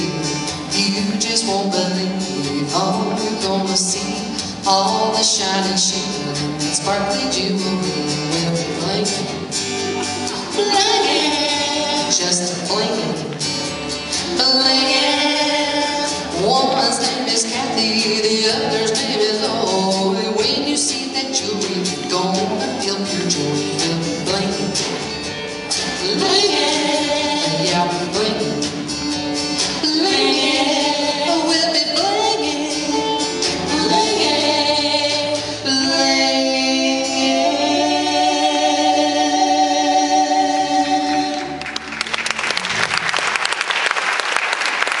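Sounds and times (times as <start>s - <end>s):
backing music with steady beat: 0.0s - 41.7s
audience applause: 41.3s - 45.0s.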